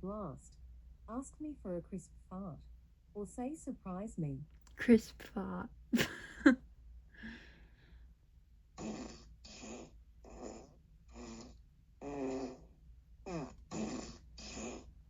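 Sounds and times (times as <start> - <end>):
fart sound effect: 13.3 - 14.9.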